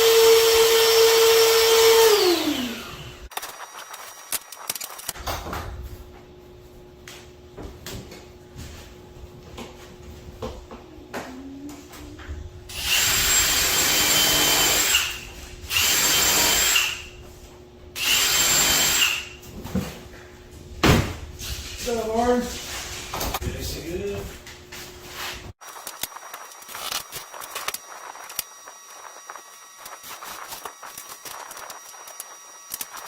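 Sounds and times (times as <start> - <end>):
power drill drilling into wood: 0.0 - 3.2, 12.7 - 17.0, 18.0 - 19.4.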